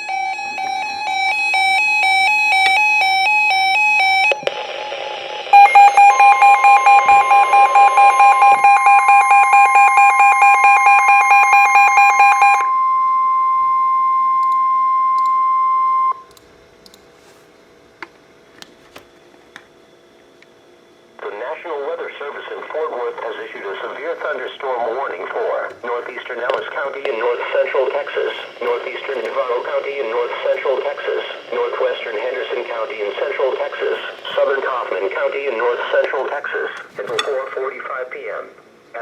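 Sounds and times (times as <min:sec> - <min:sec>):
rapidly alternating electronic tones: 0:00.0 - 0:12.7
steady warning alarm tone: 0:00.0 - 0:16.3
fast-pulsing electronic alarm beeps: 0:05.5 - 0:12.6.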